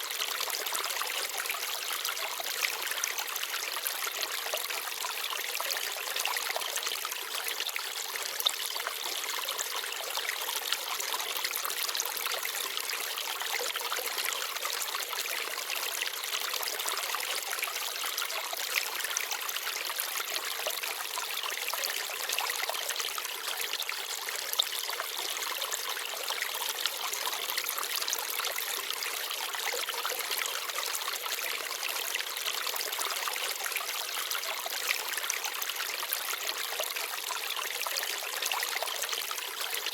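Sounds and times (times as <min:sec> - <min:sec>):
stream babbling over stones: 0:00.0 - 0:39.9.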